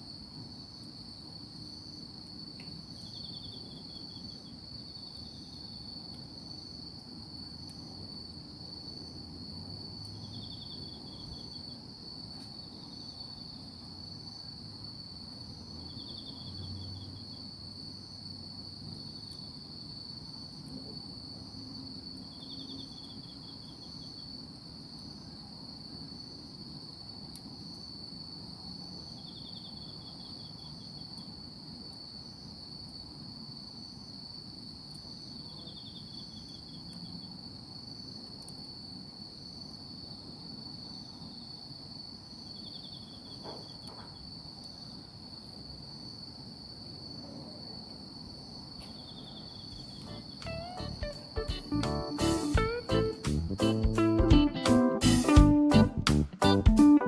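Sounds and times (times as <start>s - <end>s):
insect high-pitched trill: 48.8s - 53.9s
insect pulsed chirps: 49.0s - 53.8s.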